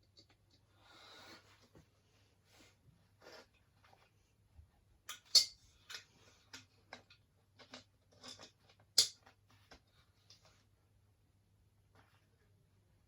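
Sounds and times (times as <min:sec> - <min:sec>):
small metal clicks and scrapes: 0:05.1 - 0:10.6.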